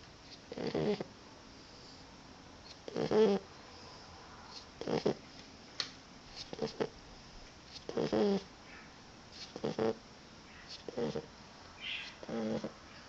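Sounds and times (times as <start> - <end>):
puppy snoring: 0.5 - 1.1, 2.8 - 3.5, 4.8 - 5.2, 6.4 - 7.0, 7.8 - 8.5, 9.5 - 10.0, 10.8 - 11.3, 12.0 - 12.8.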